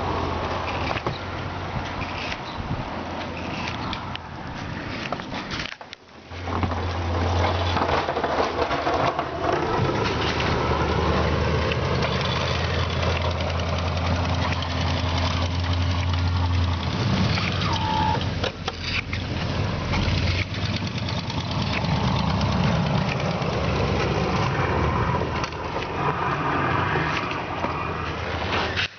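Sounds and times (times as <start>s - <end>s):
truck engine running: 9.2s - 25.9s.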